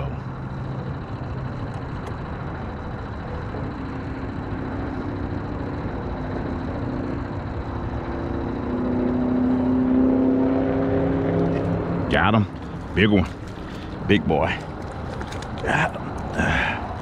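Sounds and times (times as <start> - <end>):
boat motor humming: 0.0 - 17.0.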